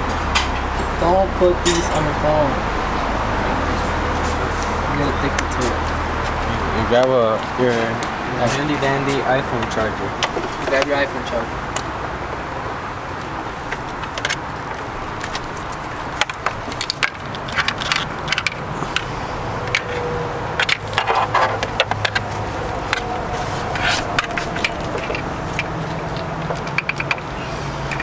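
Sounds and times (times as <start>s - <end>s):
steady background hum: 0.0s - 28.0s
clicks and light knocks: 20.6s - 27.3s.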